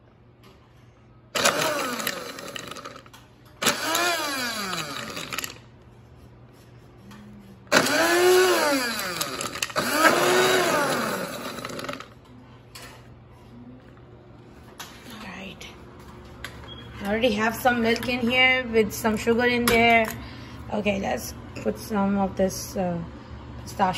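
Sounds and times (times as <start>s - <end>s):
electric blender pulsing: 1.4s - 5.7s, 7.7s - 12.1s.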